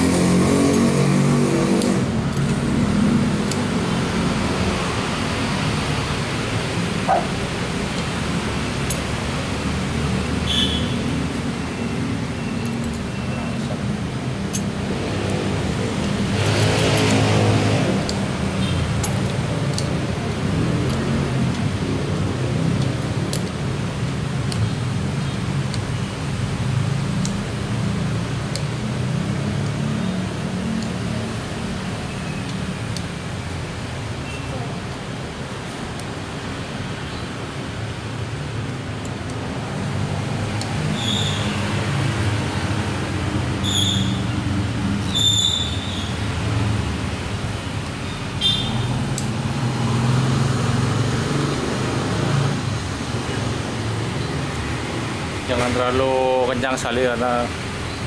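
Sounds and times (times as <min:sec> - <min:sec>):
short high-pitched squeaks: 0:43.6 - 0:44.3, 0:45.1 - 0:46.1.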